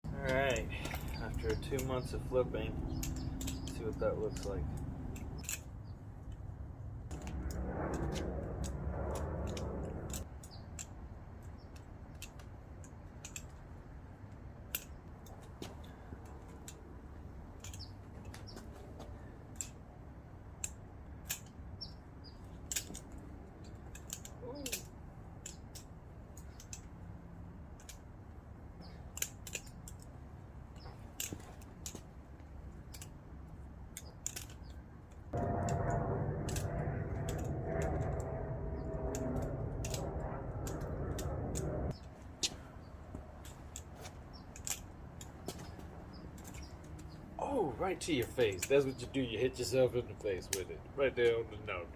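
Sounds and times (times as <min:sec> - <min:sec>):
butterfly knife metal clicks: 0:02.9 - 0:05.7, 0:11.5 - 0:13.6, 0:29.1 - 0:30.1, 0:33.9 - 0:34.8, 0:43.4 - 0:45.4.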